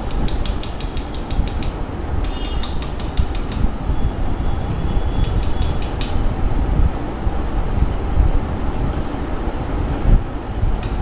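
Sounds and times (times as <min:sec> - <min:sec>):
tappet ticking: 0:00.0 - 0:03.7, 0:05.2 - 0:06.2.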